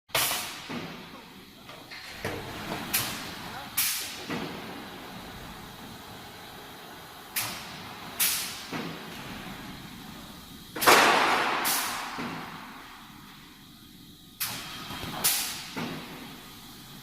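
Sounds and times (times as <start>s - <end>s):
loud metal crash: 10.8s - 12.6s.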